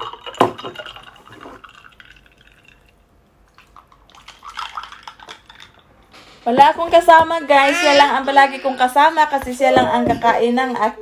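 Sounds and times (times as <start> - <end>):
juice pouring into a glass: 1.6 - 5.8.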